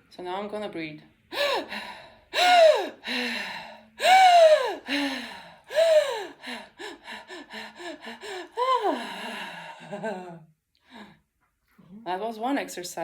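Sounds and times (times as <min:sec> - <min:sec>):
woman gasping and breathing quickly: 0:01.3 - 0:11.2.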